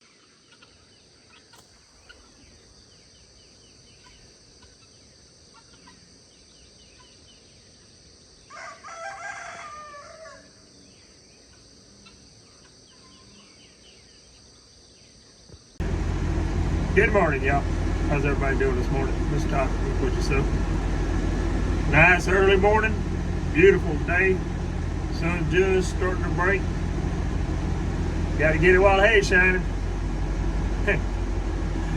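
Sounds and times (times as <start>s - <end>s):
rooster crowing: 8.5s - 10.6s.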